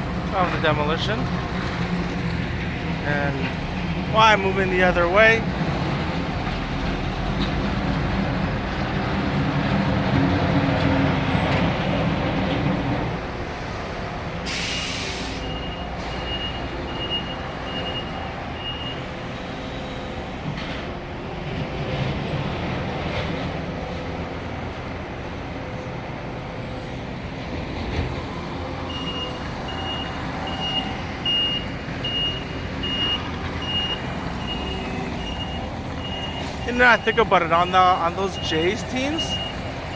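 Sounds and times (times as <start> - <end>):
heavy engines rumbling: 0.0 - 39.9
backup alarm beeping: 15.4 - 19.1, 28.9 - 39.7.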